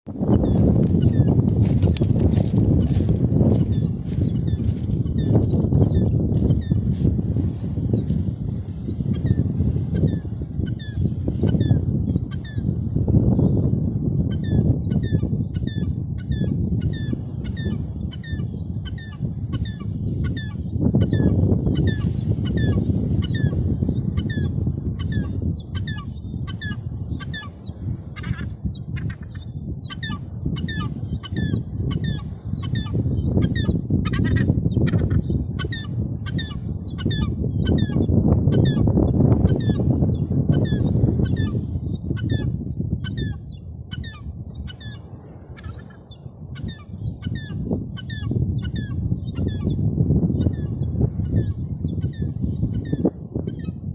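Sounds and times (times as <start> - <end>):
gulls calling: 8.8 - 49.8.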